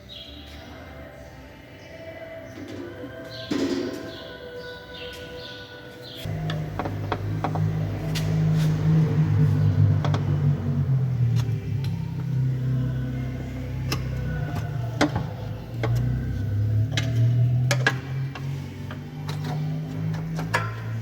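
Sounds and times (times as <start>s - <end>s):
low motor hum: 6.2s - 21.0s.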